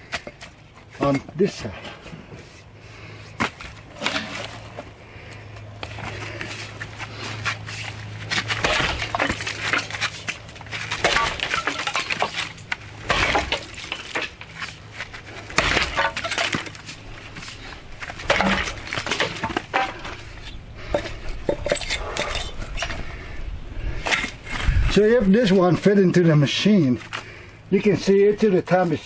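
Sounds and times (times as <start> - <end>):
axe chopping wood: 8.3 - 14.6, 15.4 - 16.8, 18.0 - 20.2.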